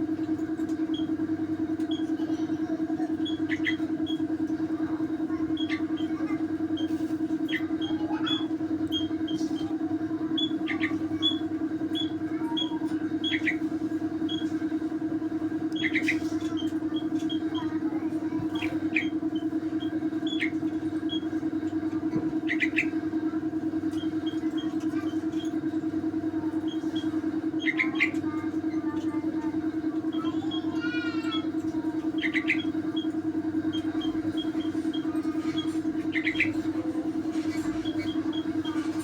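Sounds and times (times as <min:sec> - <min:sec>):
steady low hum: 0:00.0 - 0:39.0
bird chirping: 0:03.2 - 0:04.2, 0:10.4 - 0:13.6, 0:15.7 - 0:21.4, 0:22.4 - 0:23.0, 0:30.1 - 0:39.0.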